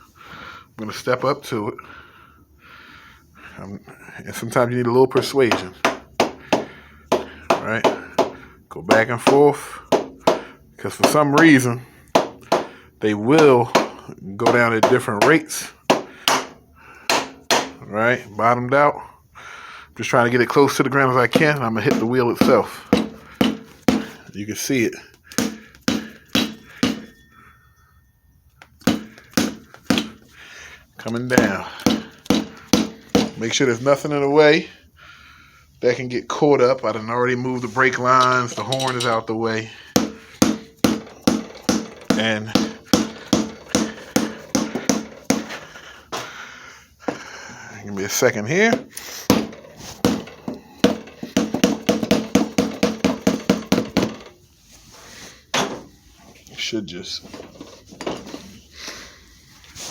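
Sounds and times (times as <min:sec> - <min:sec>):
hammer striking wheel: 0:05.2 - 0:17.8, 0:21.3 - 0:24.2, 0:25.3 - 0:27.4, 0:28.8 - 0:30.3, 0:31.3 - 0:33.4, 0:40.0 - 0:45.6, 0:48.7 - 0:54.4
faint metallic ring: 0:27.0 - 0:28.3.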